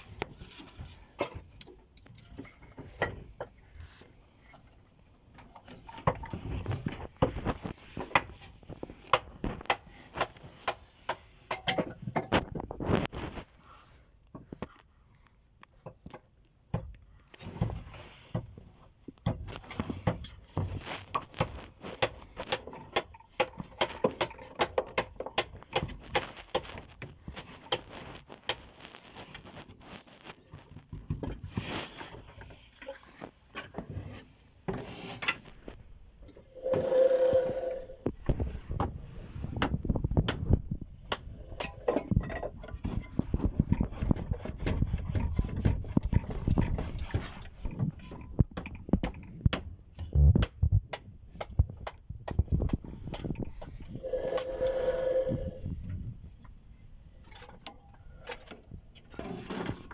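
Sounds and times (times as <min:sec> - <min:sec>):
hard parts clicking and scraping: 0:15.6 - 0:38.9.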